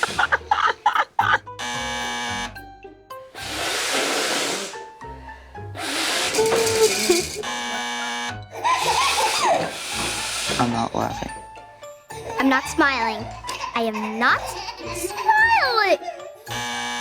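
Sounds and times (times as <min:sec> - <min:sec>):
woman blowing her nose: 0:00.0 - 0:00.6, 0:03.4 - 0:07.4, 0:08.7 - 0:10.7
background music chords: 0:00.0 - 0:17.0.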